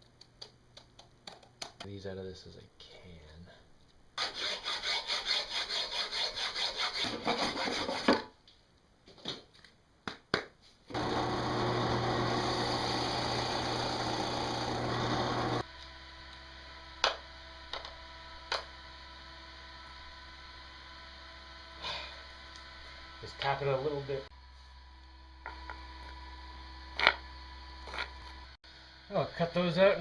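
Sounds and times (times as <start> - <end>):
hand saw cutting: 4.2 - 8.2
power tool running: 10.9 - 24.3
hum: 10.9 - 30.0.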